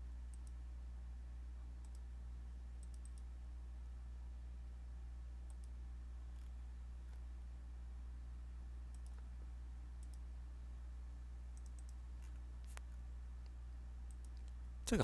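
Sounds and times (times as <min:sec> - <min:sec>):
low electrical hum: 0:00.0 - 0:15.0
faint computer clicks: 0:01.8 - 0:02.1, 0:02.8 - 0:03.3, 0:05.4 - 0:07.2, 0:08.9 - 0:09.3, 0:10.0 - 0:10.3, 0:11.5 - 0:14.6.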